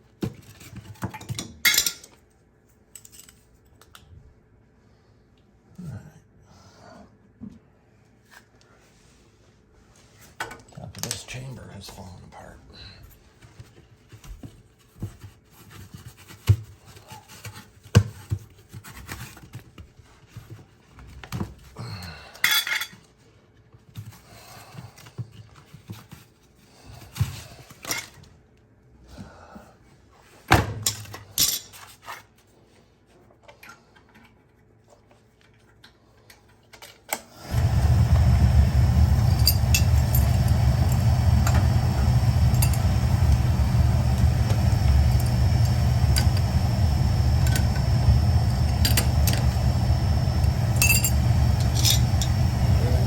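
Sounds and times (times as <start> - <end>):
tools and metal pieces clinking: 2.9 - 3.5, 50.8 - 52.0
oil burner rumbling: 37.4 - 53.0.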